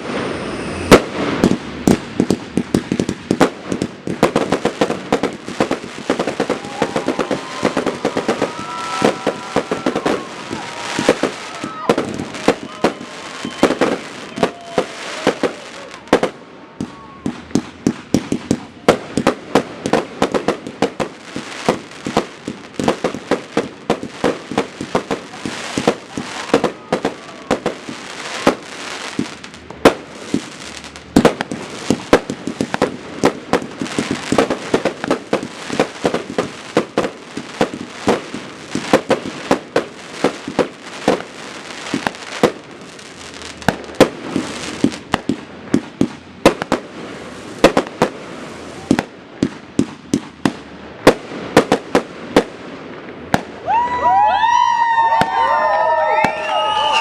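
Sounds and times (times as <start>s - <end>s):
firework launches and shell bursts: 0.0s - 6.4s.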